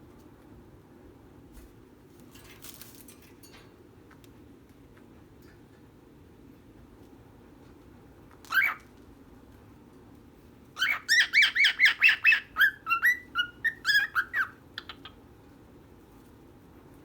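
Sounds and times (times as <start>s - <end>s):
cockatiel chirping: 8.5s - 8.8s, 10.8s - 15.2s.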